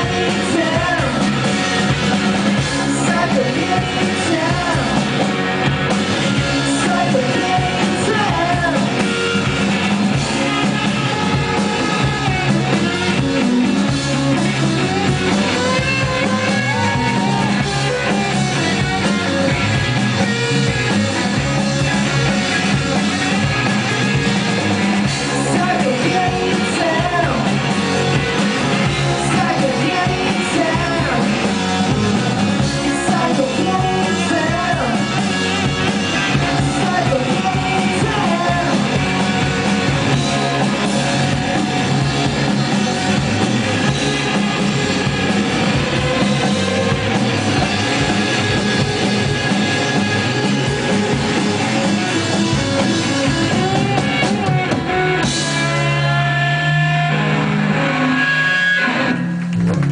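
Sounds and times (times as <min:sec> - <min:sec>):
person singing: 0:00.0 - 0:02.0, 0:02.6 - 0:05.4, 0:06.4 - 0:09.4, 0:25.0 - 0:42.1
live rock band playing: 0:00.0 - 0:59.9.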